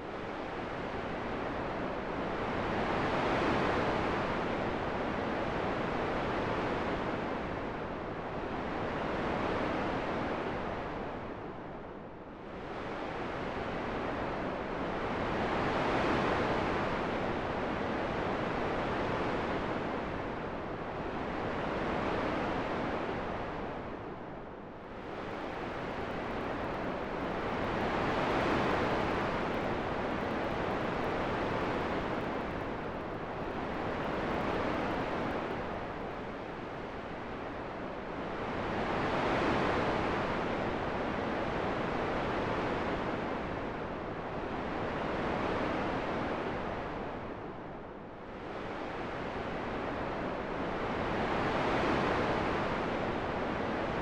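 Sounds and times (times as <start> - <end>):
wind rushing in gusts: 24.9 - 37.4.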